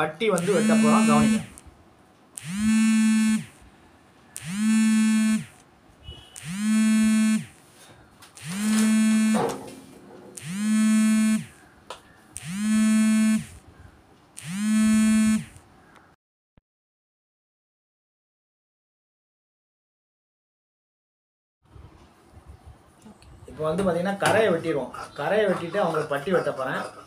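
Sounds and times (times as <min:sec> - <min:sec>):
electric fabric cutter motor buzzing: 0:00.4 - 0:01.6, 0:02.4 - 0:03.6, 0:04.4 - 0:05.6, 0:06.4 - 0:07.6, 0:08.4 - 0:09.5, 0:10.4 - 0:11.6, 0:12.4 - 0:13.6, 0:14.4 - 0:15.6.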